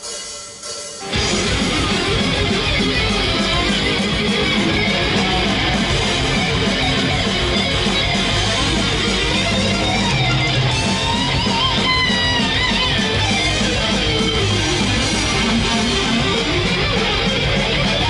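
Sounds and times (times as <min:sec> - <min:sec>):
distorted electric guitars: 0:00.0 - 0:18.0
guitar lead with bent notes: 0:00.0 - 0:18.0
thrash metal song: 0:00.0 - 0:18.0.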